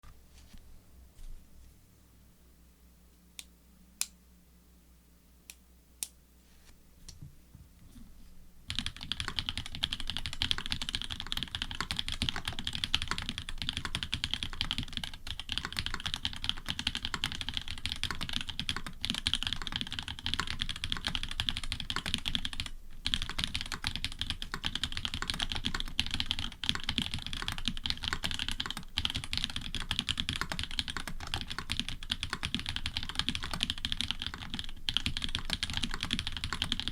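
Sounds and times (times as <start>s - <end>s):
typing on mechanical keyboard: 8.7s - 36.9s.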